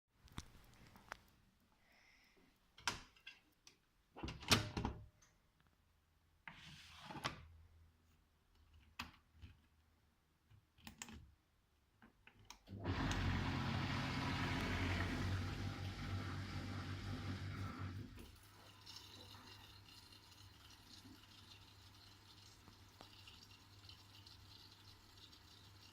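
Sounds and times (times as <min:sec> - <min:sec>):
water rushing into machine: 0:12.7 - 0:20.7.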